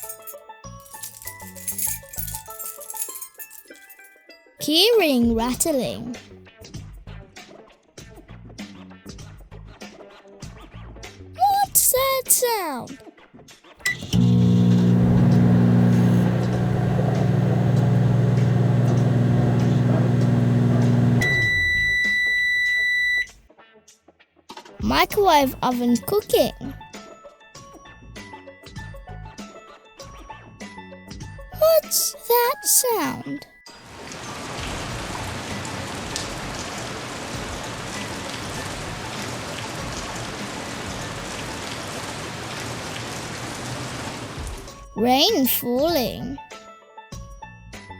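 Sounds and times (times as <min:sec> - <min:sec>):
microwave oven humming: 0:13.8 - 0:23.3
microwave long high beep: 0:21.2 - 0:23.3
raindrops pattering on surface: 0:33.9 - 0:44.6
steady rain falling: 0:33.9 - 0:44.6.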